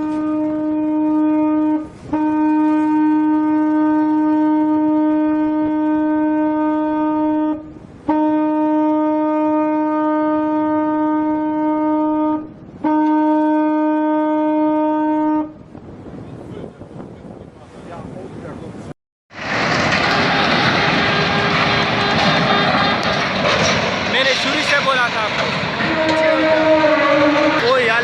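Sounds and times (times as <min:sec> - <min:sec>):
ship's horn blasts: 0:00.0 - 0:15.9, 0:20.0 - 0:23.2, 0:25.8 - 0:28.0.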